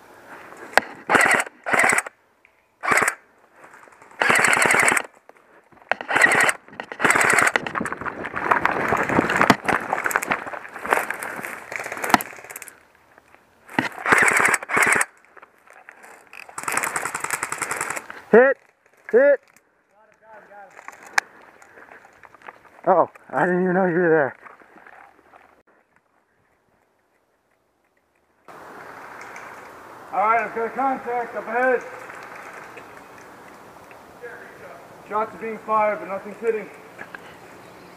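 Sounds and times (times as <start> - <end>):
airsoft guns firing full auto: 1.1 - 2.1, 2.8 - 3.2, 4.2 - 5.1, 6.1 - 7.6, 13.9 - 15.1, 16.6 - 18.0.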